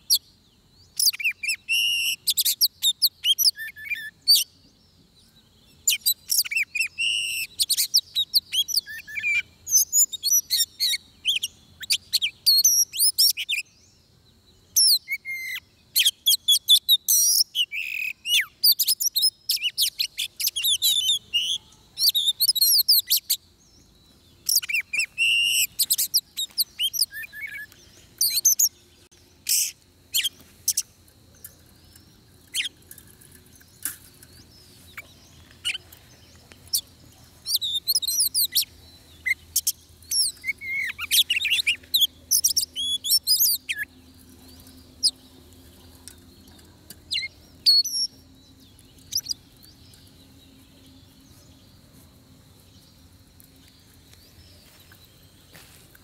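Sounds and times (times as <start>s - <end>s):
bird whistling and trilling: 1.0s - 4.5s, 5.8s - 13.6s, 14.8s - 23.4s, 24.4s - 28.7s, 37.5s - 43.9s.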